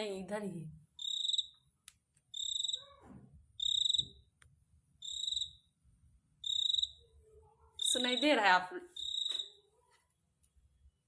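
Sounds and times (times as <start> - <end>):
cricket chirping: 1.0 - 1.7, 2.3 - 2.9, 3.6 - 4.3, 5.0 - 5.7, 6.4 - 7.0, 7.8 - 8.4, 9.0 - 9.6.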